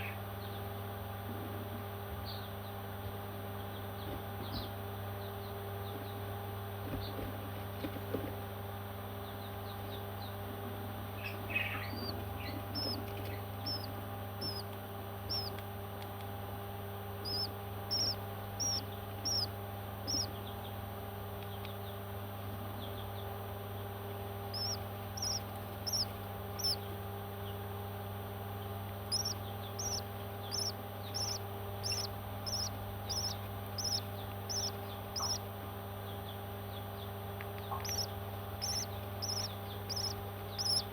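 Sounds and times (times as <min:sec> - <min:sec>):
steady low hum: 0:00.0 - 0:40.9
baby parrots chirping: 0:11.2 - 0:14.7, 0:15.3 - 0:15.6, 0:17.2 - 0:20.5, 0:24.5 - 0:26.9, 0:29.1 - 0:35.5, 0:37.6 - 0:40.9.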